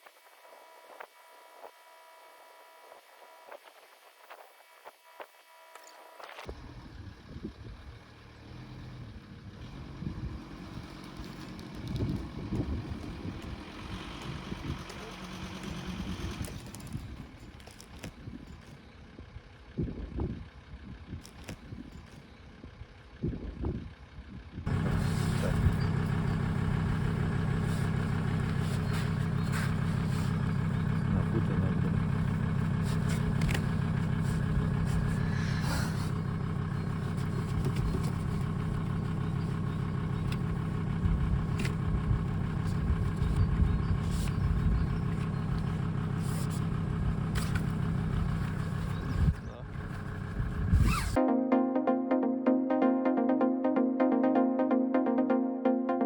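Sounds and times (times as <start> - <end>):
chainsaw engine running: 10.6 - 18.0, 24.7 - 51.2.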